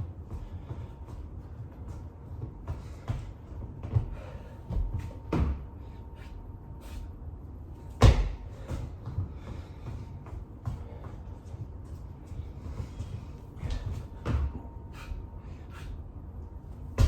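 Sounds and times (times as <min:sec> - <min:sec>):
thuds and knocks on a floor: 0:02.4 - 0:05.7, 0:08.0 - 0:11.1.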